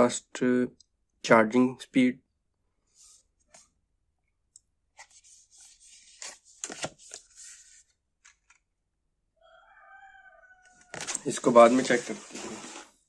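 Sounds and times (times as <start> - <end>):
packaging rustling and crinkling: 10.8 - 13.0.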